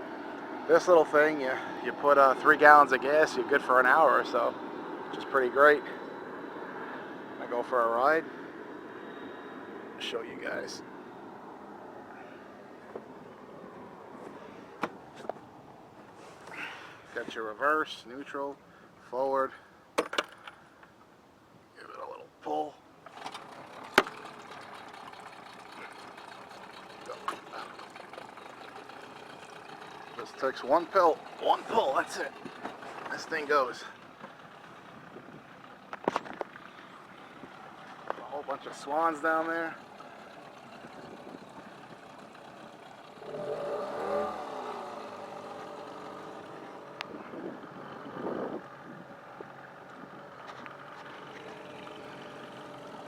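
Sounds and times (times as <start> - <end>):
outboard motor idling: 0.0 - 8.5, 23.0 - 53.0.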